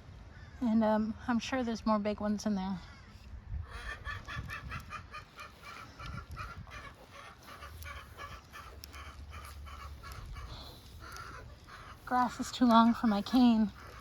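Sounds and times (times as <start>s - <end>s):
chickens clucking: 3.6s - 14.0s.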